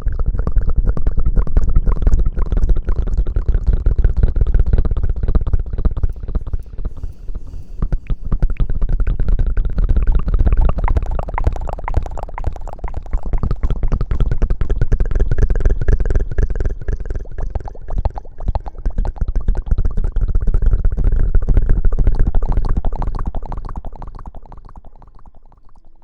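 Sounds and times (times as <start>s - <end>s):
heavy low rumble: 0.9s - 16.8s
rubbing against microphone: 6.0s - 10.2s.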